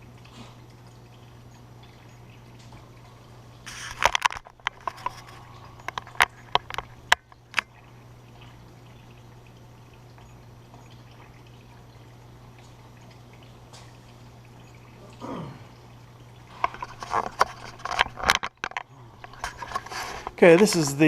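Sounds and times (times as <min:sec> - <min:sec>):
low steady hum: 0:00.0 - 0:21.0
sharp clicks and knocks: 0:03.7 - 0:07.7, 0:16.6 - 0:20.8.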